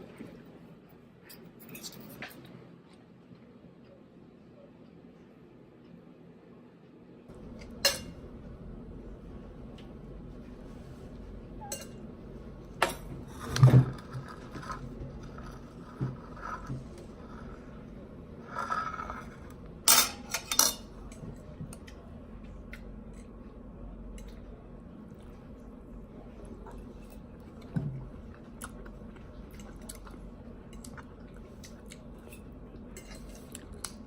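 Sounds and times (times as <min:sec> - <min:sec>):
dishes and cutlery clinking: 0:07.5 - 0:08.2, 0:11.6 - 0:12.1, 0:18.5 - 0:21.4, 0:32.2 - 0:34.0.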